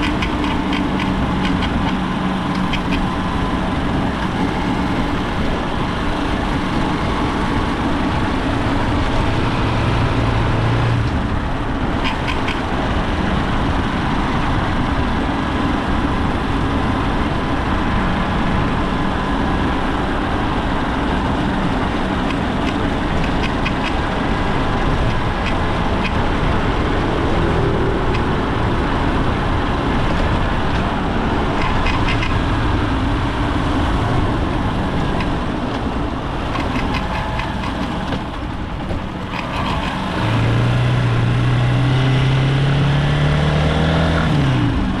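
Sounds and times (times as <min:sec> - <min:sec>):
motorcycle engine running: 0:00.0 - 0:45.0
faint clicks: 0:33.5 - 0:40.7.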